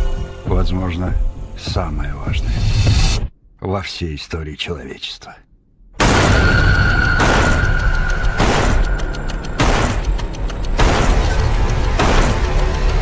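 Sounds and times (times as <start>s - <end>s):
heavy percussive booms: 6.0s - 13.0s.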